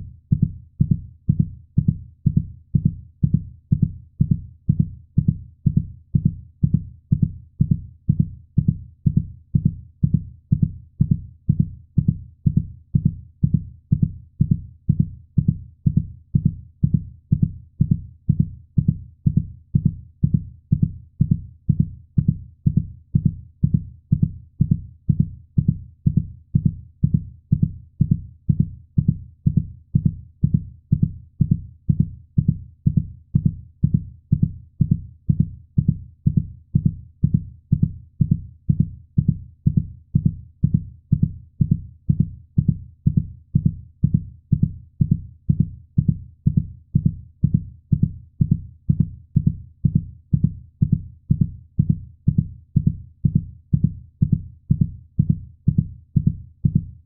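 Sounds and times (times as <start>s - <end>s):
heartbeat thumps: 0.0s - 57.0s.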